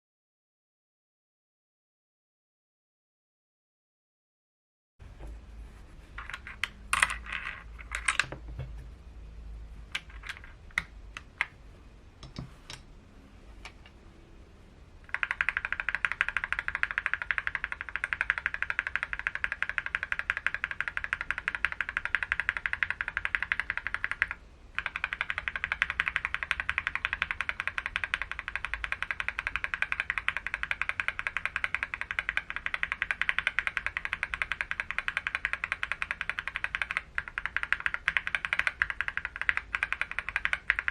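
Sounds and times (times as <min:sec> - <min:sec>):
mechanical keyboard typing: 0:06.2 - 0:08.4, 0:09.9 - 0:11.6, 0:15.0 - 0:40.9.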